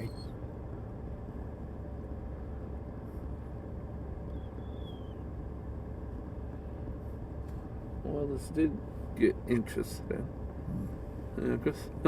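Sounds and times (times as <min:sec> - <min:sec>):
faint high whistle: 0:00.0 - 0:00.4, 0:04.3 - 0:05.2
low rumble with hiss: 0:00.0 - 0:12.0.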